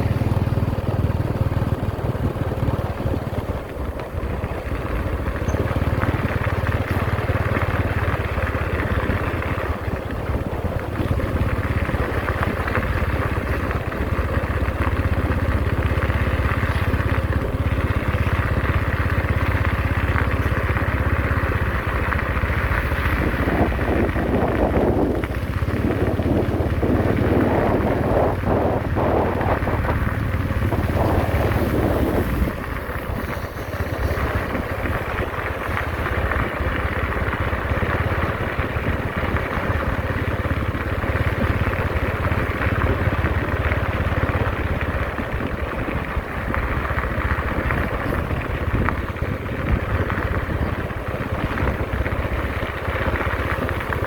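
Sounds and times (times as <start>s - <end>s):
heavy machinery engine running: 0.0s - 54.0s.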